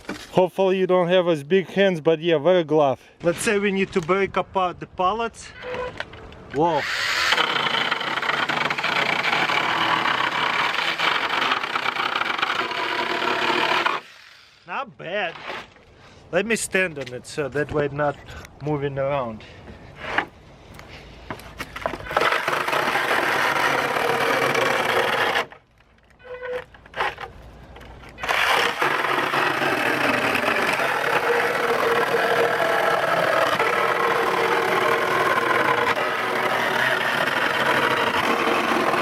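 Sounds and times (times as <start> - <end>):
electric chainsaw cutting wood: 6.7 - 14.6, 22.1 - 25.6, 28.2 - 39.0.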